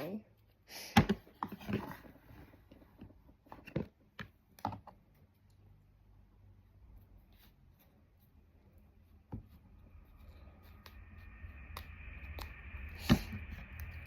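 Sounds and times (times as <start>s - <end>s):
faint high hum: 5.8s - 14.0s.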